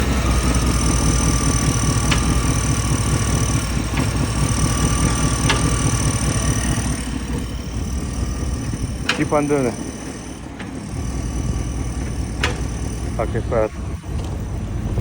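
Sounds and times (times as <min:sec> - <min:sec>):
truck engine running: 0:00.0 - 0:15.0.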